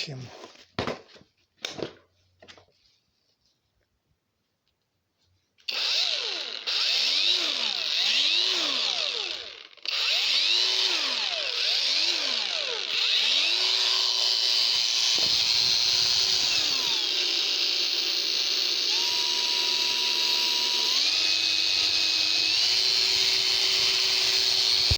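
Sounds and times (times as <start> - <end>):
angle grinder motor whine: 5.7 - 24.9.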